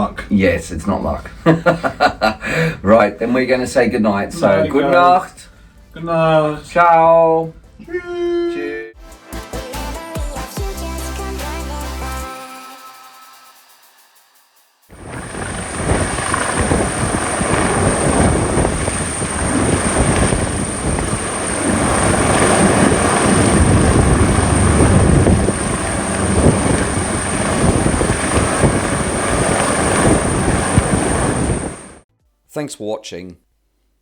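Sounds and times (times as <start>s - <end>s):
thin high whine: 4.3s - 5.3s, 14.9s - 32.0s
loud steady rushing noise: 14.9s - 32.0s.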